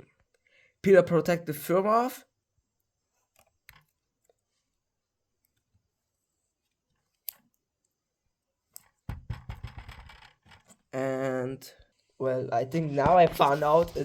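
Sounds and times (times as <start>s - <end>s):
plastic film crackling: 12.7s - 14.0s.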